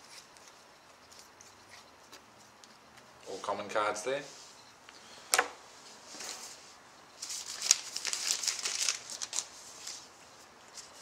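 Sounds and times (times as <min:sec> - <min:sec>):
foil wrapper crinkling and tearing: 0:07.2 - 0:10.0.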